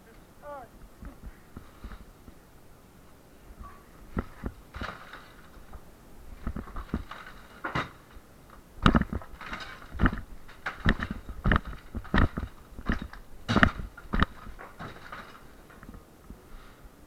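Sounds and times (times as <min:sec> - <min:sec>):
heavy blows breaking walls: 0:03.5 - 0:16.1.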